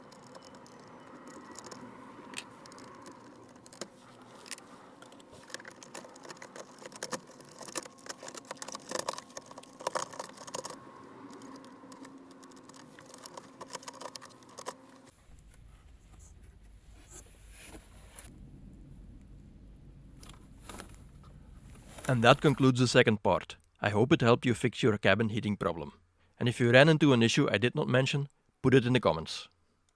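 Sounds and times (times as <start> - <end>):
small parts clicking and rattling: 0.0 - 15.2
faint steady hum: 0.0 - 22.7.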